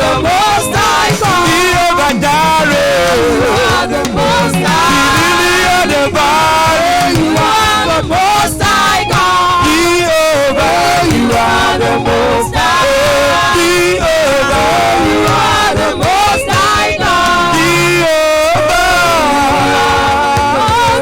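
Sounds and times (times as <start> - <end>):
person singing: 0.0 - 21.0
worship music accompaniment: 0.0 - 21.0.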